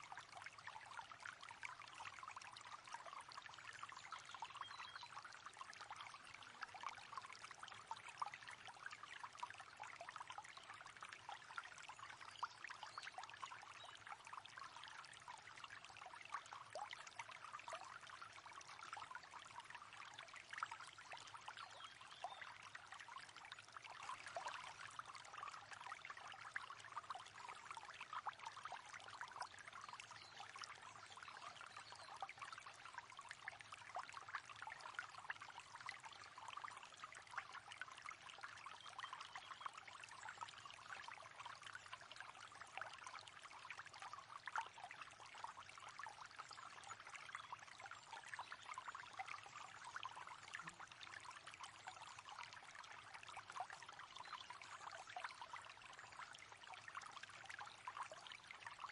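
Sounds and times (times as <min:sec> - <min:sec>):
river water flowing: 0:20.9 - 0:34.6.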